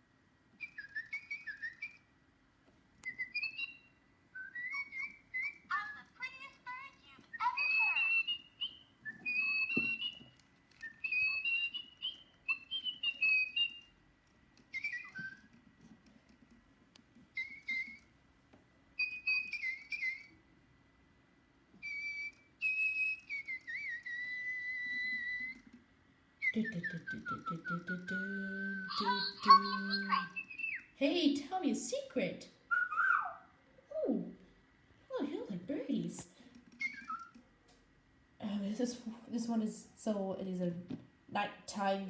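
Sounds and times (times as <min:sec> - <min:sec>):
toy bird electronic chirps: 0:00.6 - 0:02.1, 0:03.1 - 0:13.9, 0:14.7 - 0:15.5, 0:17.3 - 0:18.1, 0:19.0 - 0:20.4, 0:21.8 - 0:25.7, 0:26.4 - 0:31.0, 0:36.8 - 0:37.4.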